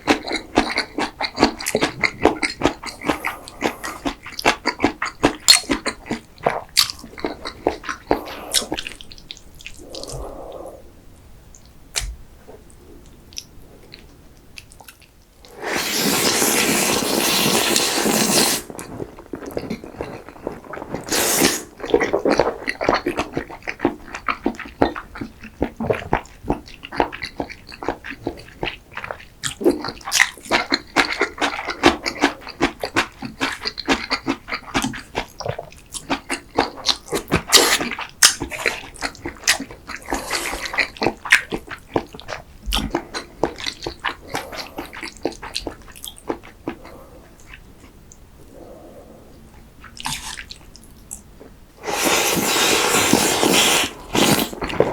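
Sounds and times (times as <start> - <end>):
wet chewing with smacking: 0.0 - 10.4, 17.0 - 48.2, 49.8 - 51.3, 51.9 - 54.9
person slurping food: 1.8 - 4.2, 7.3 - 9.0, 9.7 - 10.9, 15.5 - 18.9, 19.9 - 21.8, 40.0 - 41.0, 44.1 - 45.1, 51.8 - 54.9.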